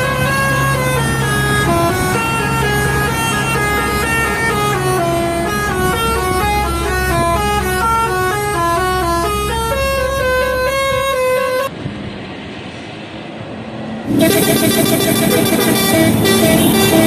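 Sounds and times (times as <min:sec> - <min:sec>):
bus horn playing a tune: 0:00.0 - 0:11.7, 0:14.1 - 0:17.0
low engine rumble: 0:00.0 - 0:17.0.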